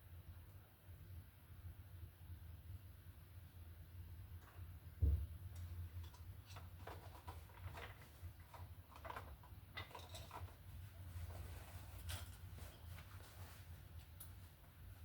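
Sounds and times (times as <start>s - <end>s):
low thump: 5.0s - 5.3s.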